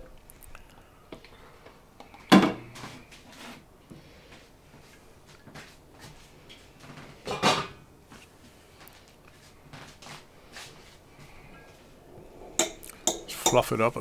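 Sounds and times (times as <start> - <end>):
dishes and utensils clattering: 2.1 - 3.2, 7.0 - 7.9, 12.5 - 13.7.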